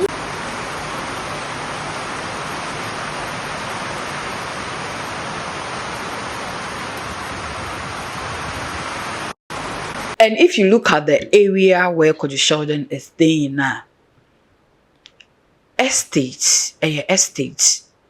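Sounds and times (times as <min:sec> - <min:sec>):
rushing water: 0:00.0 - 0:10.2.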